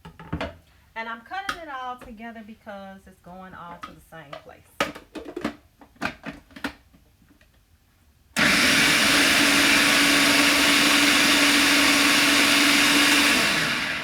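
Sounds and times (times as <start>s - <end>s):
food processor motor humming: 8.4s - 14.0s.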